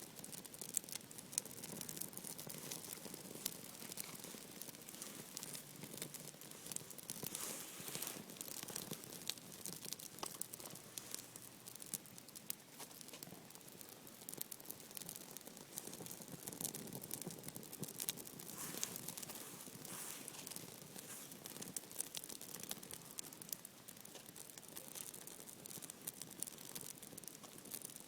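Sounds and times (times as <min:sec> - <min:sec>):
dry bark tearing and crackling: 0:00.5 - 0:12.0.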